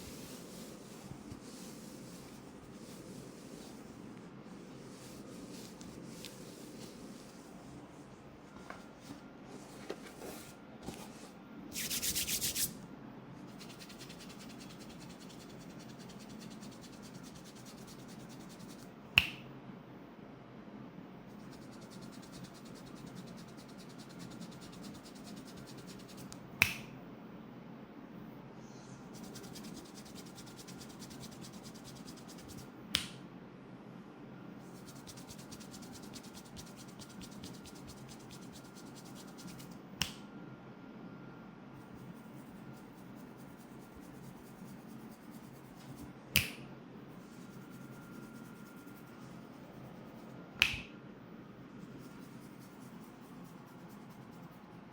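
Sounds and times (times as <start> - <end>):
hands rubbing hair: 0.0 - 8.0, 11.8 - 12.8, 51.8 - 54.6
sharp snaps: 19.2 - 19.5, 26.6 - 27.0, 32.9 - 33.2, 40.0 - 40.3, 46.3 - 46.7, 50.6 - 51.0.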